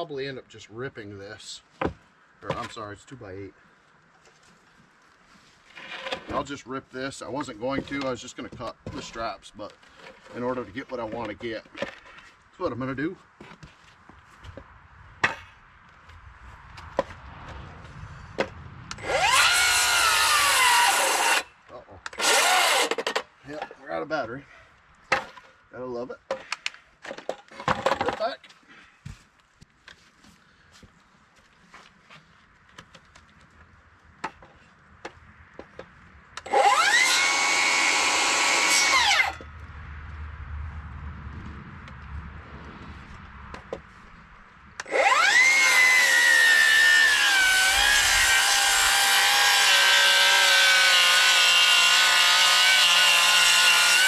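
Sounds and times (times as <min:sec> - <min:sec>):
circular saw cutting wood: 0:18.9 - 0:23.3, 0:36.4 - 0:39.5, 0:44.8 - 0:54.0.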